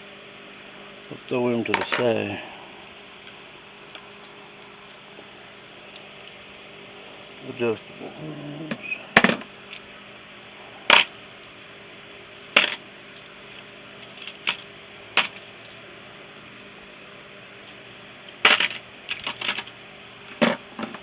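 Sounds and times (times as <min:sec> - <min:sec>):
metal tools clinking: 0:02.8 - 0:04.8, 0:08.7 - 0:09.4, 0:20.4 - 0:21.0.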